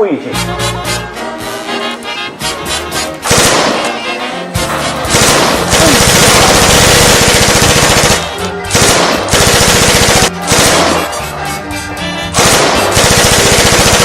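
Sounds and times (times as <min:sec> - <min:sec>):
machine-gun fire: 0:03.2 - 0:04.0, 0:05.1 - 0:11.1, 0:12.4 - 0:14.0.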